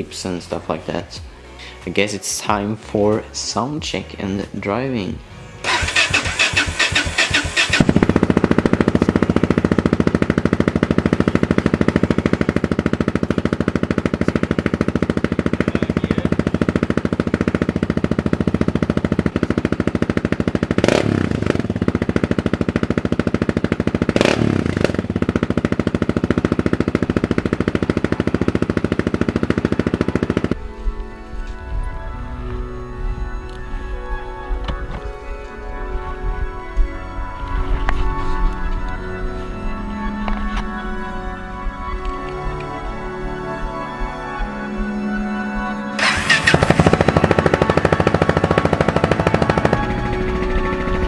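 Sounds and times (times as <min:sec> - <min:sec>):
music: 0:00.0 - 0:09.9, 0:10.6 - 0:18.4, 0:27.2 - 0:51.0
motorcycle engine starting and idling: 0:03.9 - 0:30.6, 0:46.0 - 0:51.0
engine revving: 0:05.5 - 0:30.6, 0:46.0 - 0:51.0.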